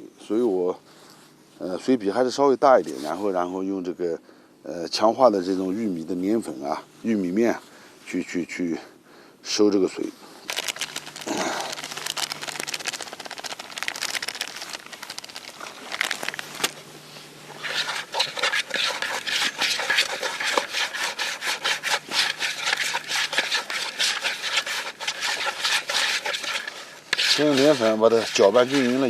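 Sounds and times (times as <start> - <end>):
gritty scraping and stirring: 10.0 - 29.0.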